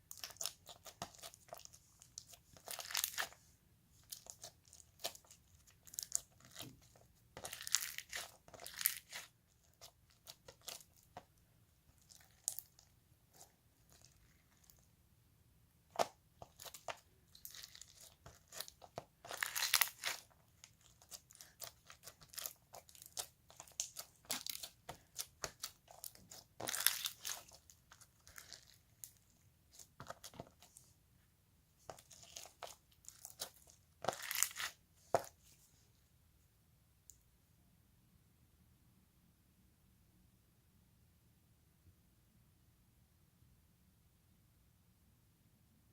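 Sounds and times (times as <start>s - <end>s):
slime crackling and popping: 4.1s - 9.3s, 15.9s - 30.4s, 31.9s - 34.8s.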